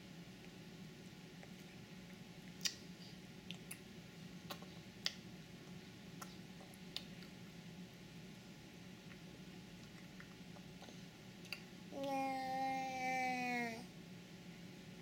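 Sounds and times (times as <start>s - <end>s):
faint low hum: 0.0s - 15.0s
baby chewing with mouth clicks: 0.4s - 7.6s, 9.0s - 12.2s.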